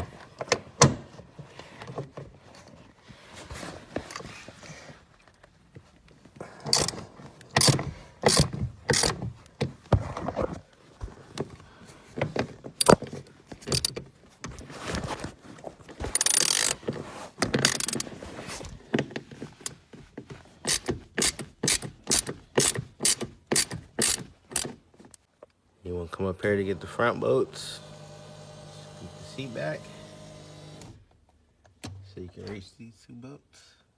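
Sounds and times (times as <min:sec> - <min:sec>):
ratchet wrench clicking: 0:07.6 - 0:09.2, 0:13.7 - 0:13.9, 0:16.2 - 0:16.8, 0:17.6 - 0:18.0, 0:20.7 - 0:24.7.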